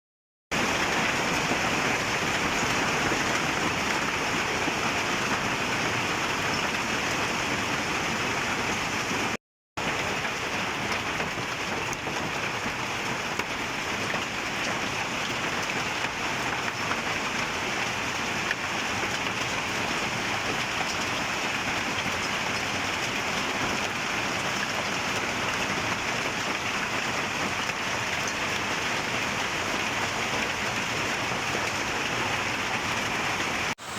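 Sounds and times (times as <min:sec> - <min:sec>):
heavy rain and hail pattering: 0:00.6 - 0:33.9.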